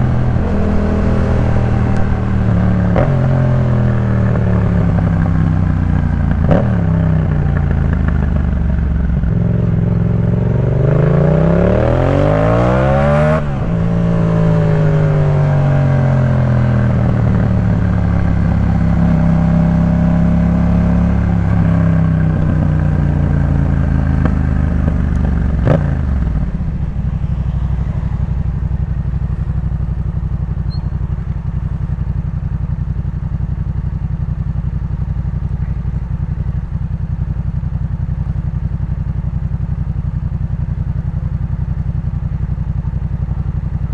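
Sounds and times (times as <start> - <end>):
motorcycle engine revving: 0.0 - 43.9.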